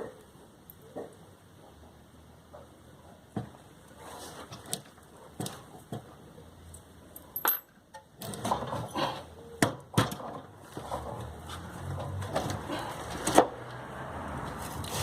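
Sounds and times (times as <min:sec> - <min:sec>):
metal tools clicking and clattering: 0:07.2 - 0:09.1.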